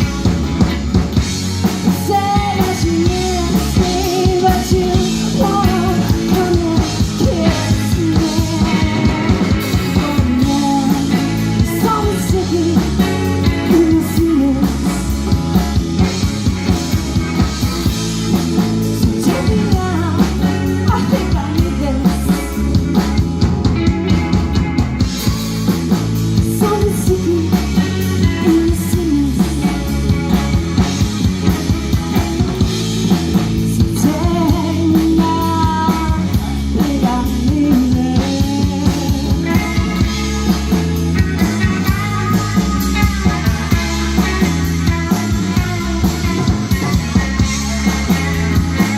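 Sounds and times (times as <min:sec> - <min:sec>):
drum kit beat: 0:00.0 - 0:48.9
guitar: 0:00.0 - 0:48.9
person singing: 0:01.7 - 0:15.2, 0:19.0 - 0:22.7, 0:26.4 - 0:30.1, 0:33.7 - 0:40.2.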